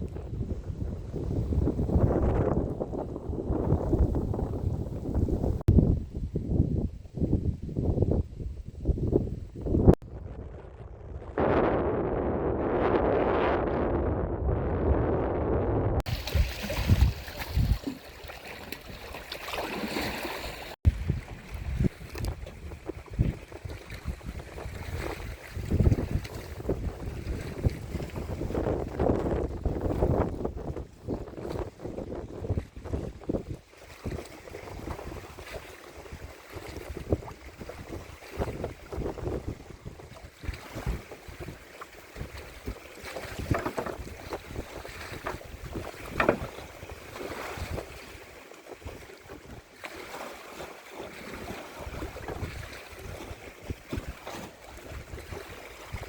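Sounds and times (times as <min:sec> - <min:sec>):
deep low wind thumps: 0:00.0 - 0:17.9
wind buffeting microphone: 0:00.0 - 0:48.2, 0:51.3 - 0:56.0.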